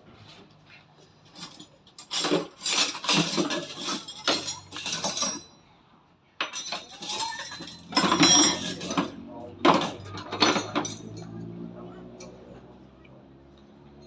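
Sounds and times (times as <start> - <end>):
metal hand tools clinking: 1.4 - 5.6, 6.4 - 9.1, 9.7 - 11.4.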